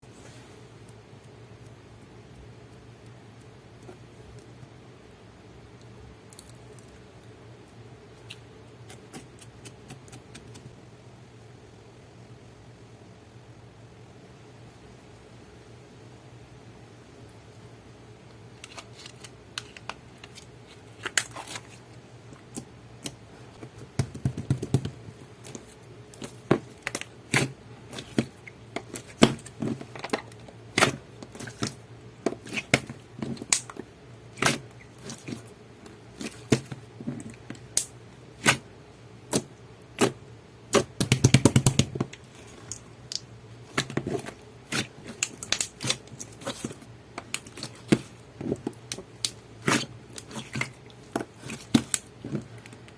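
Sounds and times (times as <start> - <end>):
slime crackling: 25.4 - 35.5, 39.3 - 52.6.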